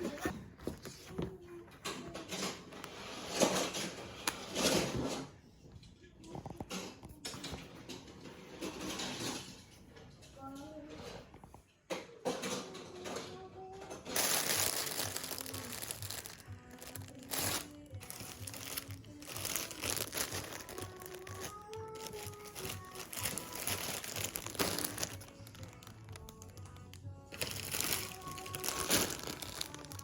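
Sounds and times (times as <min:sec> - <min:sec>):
crinkling and rustling: 0:00.0 - 0:30.0
background music: 0:12.8 - 0:30.0.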